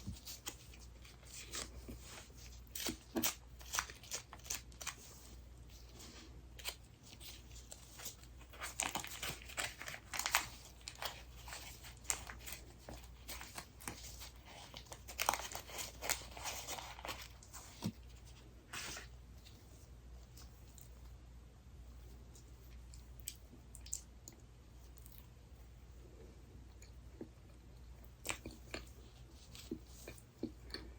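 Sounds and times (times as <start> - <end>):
plastic packaging crinkling and tearing: 0.1 - 5.2, 6.6 - 18.1.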